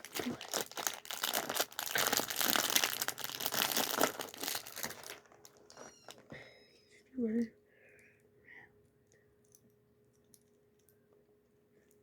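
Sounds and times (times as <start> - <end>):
plastic packet crinkling: 0.0 - 6.3.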